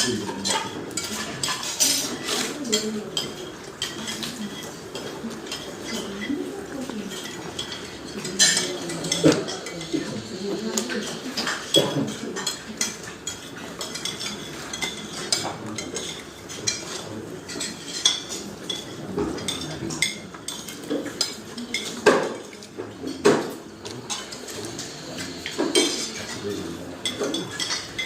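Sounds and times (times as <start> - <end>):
cutlery clinking on plates: 0.0 - 28.0
murmur of voices: 0.0 - 28.0.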